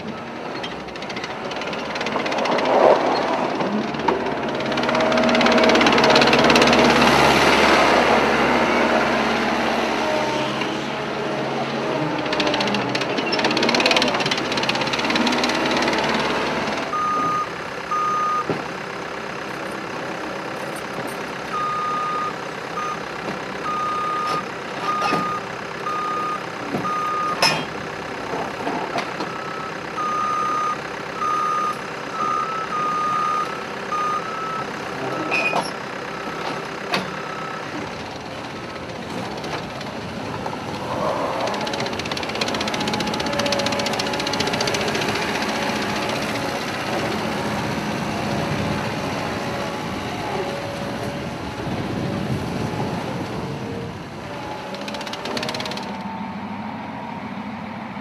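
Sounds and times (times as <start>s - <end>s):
diesel engine running hard: 0.0s - 58.0s
reversing alarm beeping: 16.2s - 18.5s, 21.5s - 27.6s, 29.4s - 34.8s.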